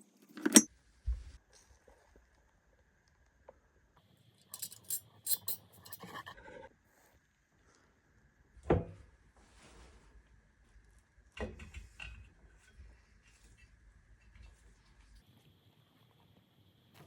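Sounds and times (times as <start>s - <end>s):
metal pieces clinking: 4.5s - 6.0s.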